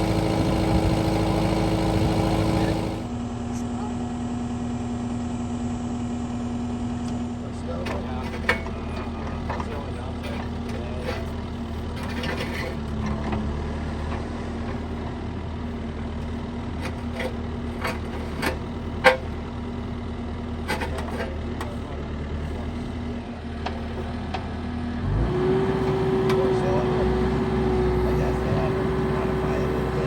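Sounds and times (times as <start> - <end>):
engine idling: 0.0 - 30.0.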